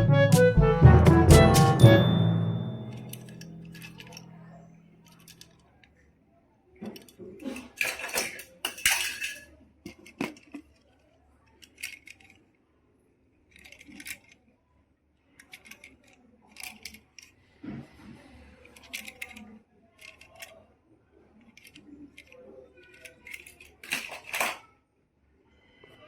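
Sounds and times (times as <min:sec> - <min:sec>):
toy vehicles clicking and clattering: 0:06.8 - 0:12.4, 0:13.5 - 0:14.4, 0:15.4 - 0:17.4, 0:18.6 - 0:20.6, 0:21.4 - 0:24.7.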